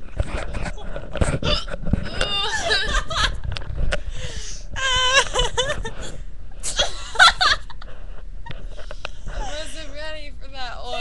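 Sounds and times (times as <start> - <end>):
girl giggling: 2.2 - 3.5, 4.8 - 7.9.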